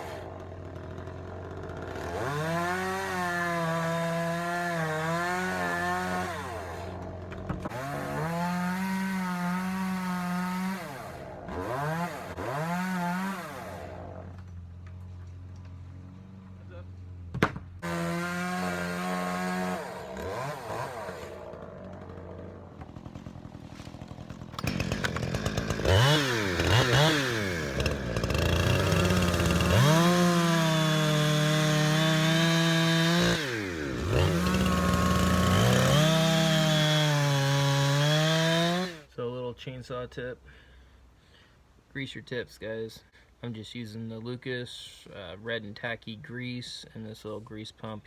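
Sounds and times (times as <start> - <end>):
chainsaw revving and cutting wood: 0.0 - 16.8, 17.8 - 39.1.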